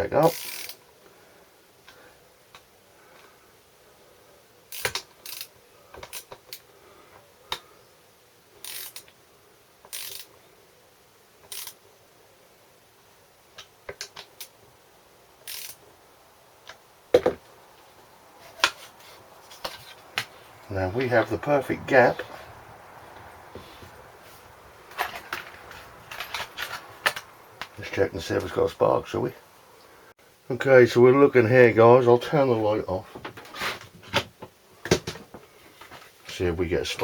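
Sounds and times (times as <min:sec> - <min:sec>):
ratcheting strokes: 0:00.3 - 0:00.8, 0:04.7 - 0:05.5, 0:08.6 - 0:09.1, 0:09.9 - 0:10.3, 0:11.5 - 0:11.8, 0:15.4 - 0:15.8
hand tool clicks: 0:11.4 - 0:11.8, 0:15.4 - 0:15.8.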